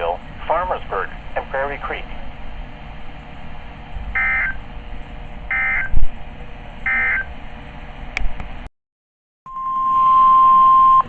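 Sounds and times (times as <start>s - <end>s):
buzzy digital chirps: 4.2s - 4.6s.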